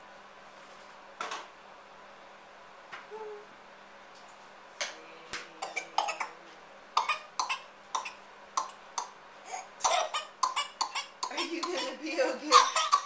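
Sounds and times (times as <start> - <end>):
young child coughing: 5.6 - 6.4, 7.0 - 8.7, 9.5 - 13.0.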